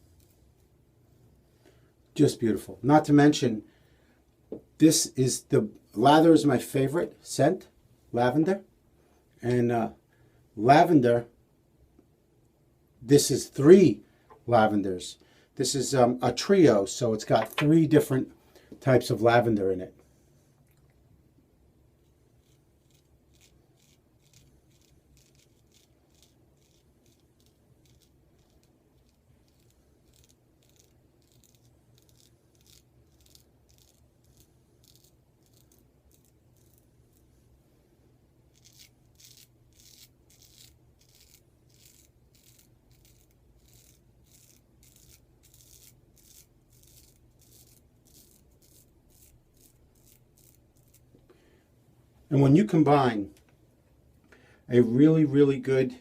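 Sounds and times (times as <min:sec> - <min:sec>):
razor scraping stubble: 0:22.0 - 0:37.3, 0:38.5 - 0:51.1.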